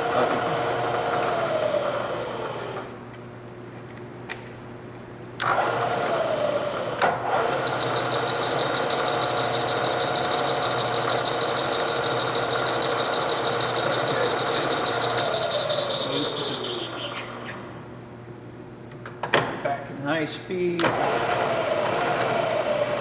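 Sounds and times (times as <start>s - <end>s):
milling machine motor whine: 0.0s - 3.0s, 5.4s - 17.8s, 20.8s - 23.0s.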